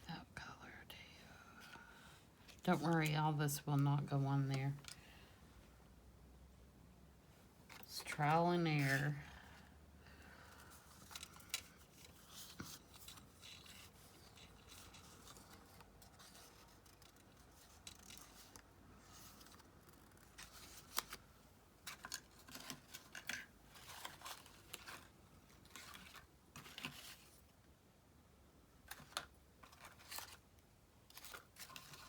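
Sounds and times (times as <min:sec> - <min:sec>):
paper rustling: 0:07.7 - 0:09.2, 0:28.9 - 0:30.4, 0:31.1 - 0:32.0.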